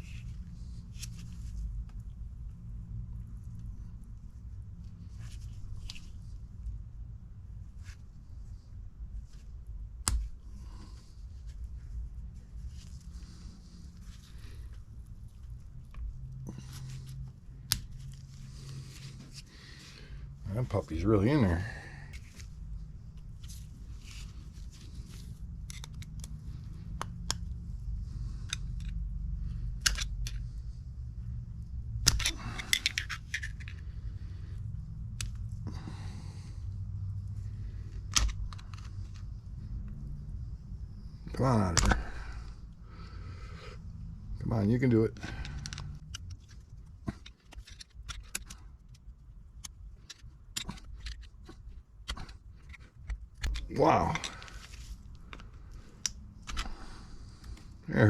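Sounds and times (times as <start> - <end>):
steady low hum: 0.0 - 58.0
metal tools clicking and scraping: 32.1 - 33.8.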